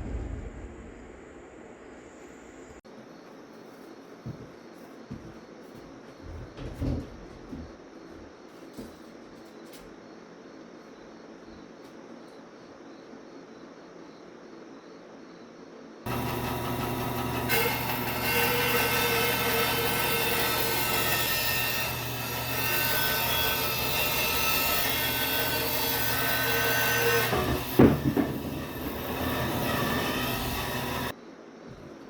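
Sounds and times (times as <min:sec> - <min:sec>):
bandsaw cutting log: 0:16.1 - 0:31.1
loud knock: 0:27.1 - 0:30.8.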